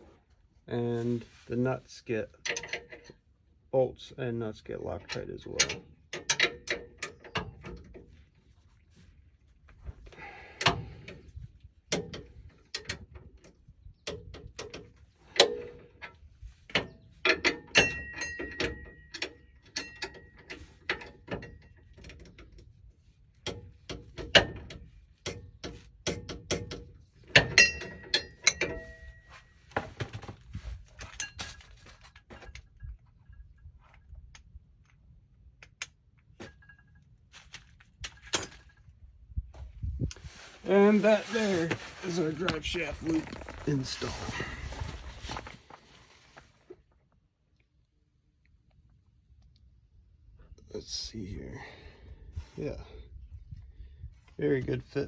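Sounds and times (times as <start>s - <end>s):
metal clinks and knocks: 14.1s - 22.6s, 23.5s - 34.1s, 36.4s - 37.4s, 38.0s - 38.9s.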